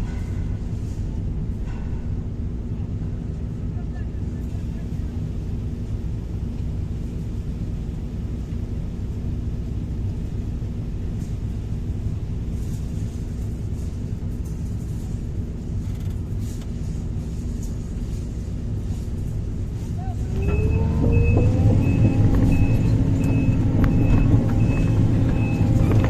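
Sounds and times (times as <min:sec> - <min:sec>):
excavator diesel engine running: 0:00.0 - 0:26.0
faint clicks and rattles: 0:12.6 - 0:20.6.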